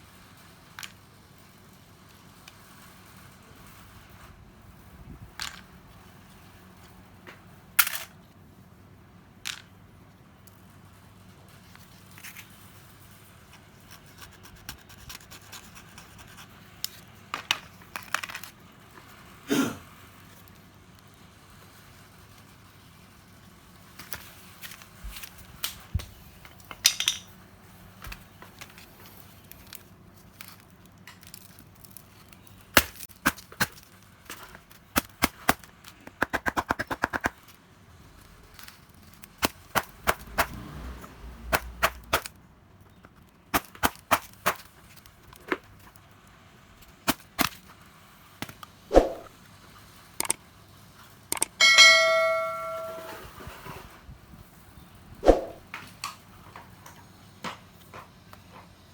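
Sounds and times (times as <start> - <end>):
tools clicking and knocking: 26.7 - 27.3, 51.3 - 53.3
metal part ringing: 51.4 - 53.3.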